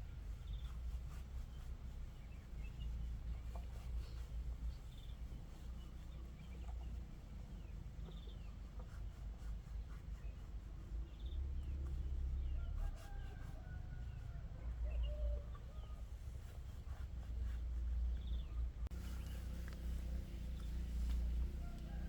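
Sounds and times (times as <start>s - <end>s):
small birds chirping: 0.0s - 22.0s
steady low rumble: 18.2s - 22.0s
rooster crowing: 21.3s - 22.0s.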